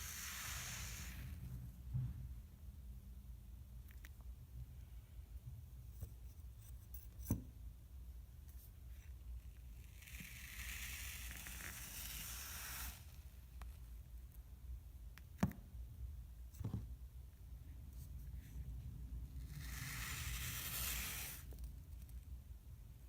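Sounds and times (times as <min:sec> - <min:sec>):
tool scraping sand: 0:10.2 - 0:13.2, 0:19.5 - 0:21.5.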